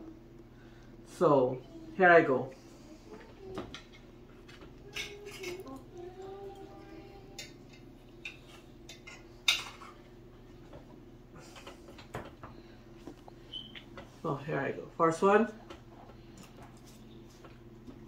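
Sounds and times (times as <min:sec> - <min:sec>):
cutlery clinking on a plate: 0:04.9 - 0:05.7.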